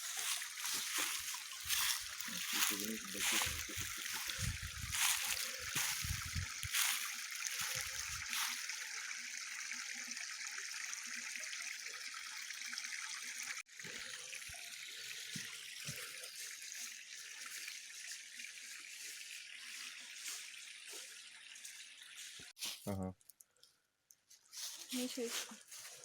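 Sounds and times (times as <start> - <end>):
running water trickling: 0.0 - 22.6.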